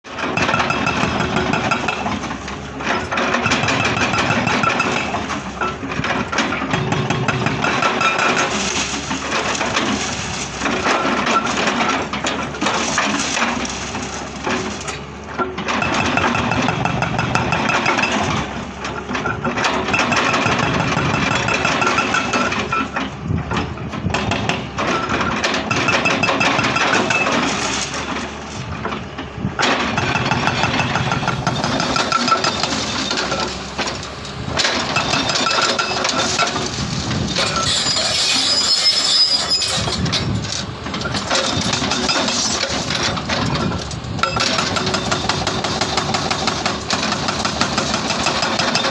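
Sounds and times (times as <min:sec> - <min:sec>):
hydraulic breaker hammering: 0:00.1 - 0:37.7, 0:40.0 - 0:48.9
diesel engine running: 0:00.1 - 0:38.6.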